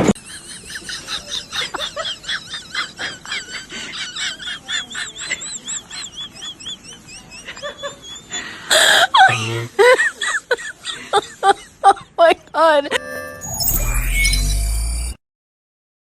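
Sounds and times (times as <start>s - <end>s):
high-pitched chirping: 13.0s - 15.2s.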